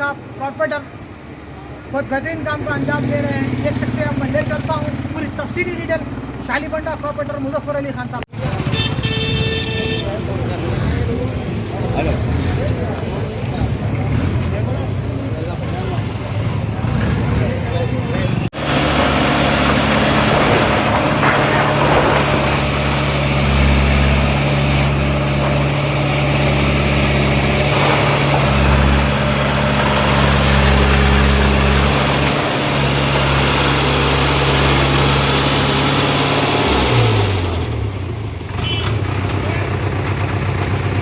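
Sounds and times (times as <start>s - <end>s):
large engine humming: 10.0s - 41.0s.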